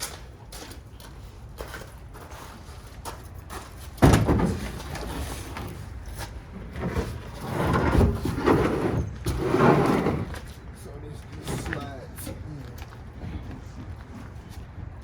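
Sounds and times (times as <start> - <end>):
plywood scraping and bumping: 3.6 - 10.6.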